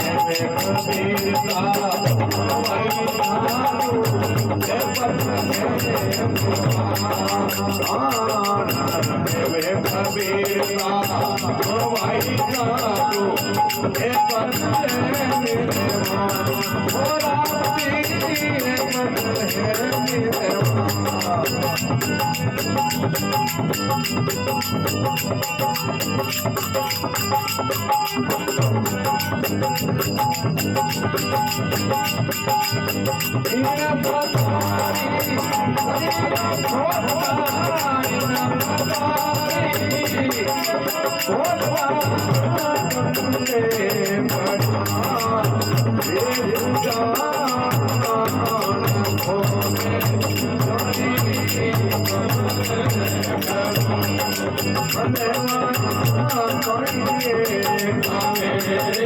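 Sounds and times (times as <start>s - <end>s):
devotional song melody: 0.0s - 59.0s
jingling percussion beat: 0.0s - 59.0s.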